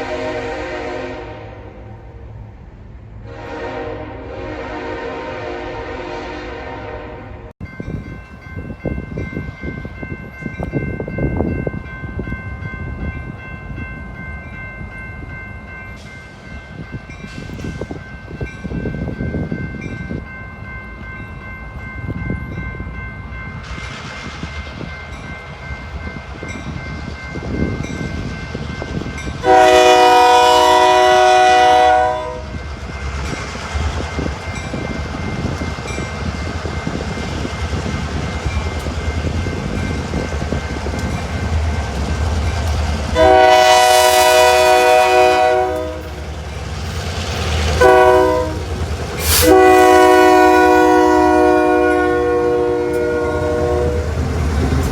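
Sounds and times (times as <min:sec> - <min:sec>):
locomotive horn blast: 0:00.0 - 0:02.1, 0:03.2 - 0:07.5, 0:29.4 - 0:32.6, 0:43.1 - 0:46.3, 0:47.6 - 0:54.8
train running on rails: 0:00.0 - 0:54.9.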